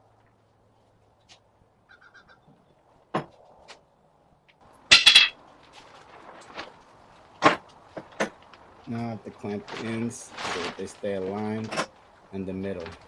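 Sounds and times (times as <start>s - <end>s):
sharp clatter of boards: 7.4s - 8.4s.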